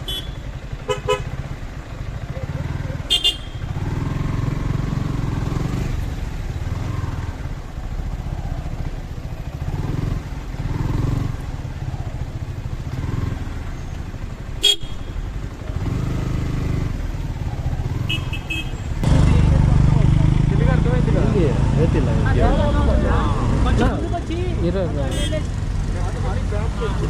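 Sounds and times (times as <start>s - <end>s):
car horn toot: 0.0s - 1.4s, 3.1s - 3.8s, 14.6s - 15.3s, 18.0s - 18.9s, 25.1s - 25.5s
traffic engines running: 0.0s - 27.0s.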